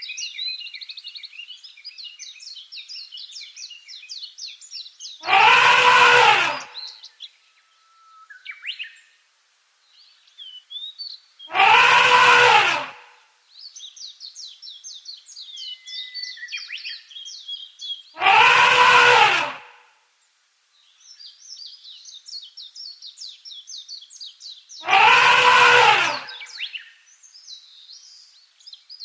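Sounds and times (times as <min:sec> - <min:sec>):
small birds chirping: 0:00.0 - 0:07.4, 0:09.8 - 0:19.4, 0:20.2 - 0:29.0
elephant trumpeting: 0:05.2 - 0:06.8, 0:11.5 - 0:13.1, 0:18.2 - 0:19.8, 0:24.8 - 0:26.4.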